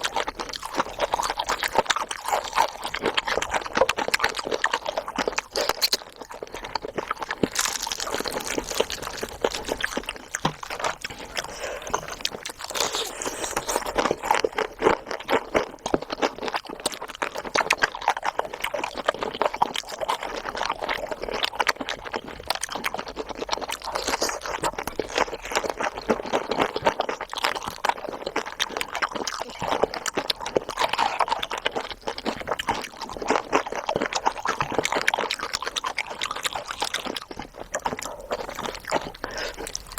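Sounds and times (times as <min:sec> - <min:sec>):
chewing and mouth sounds: 0:00.0 - 0:39.9.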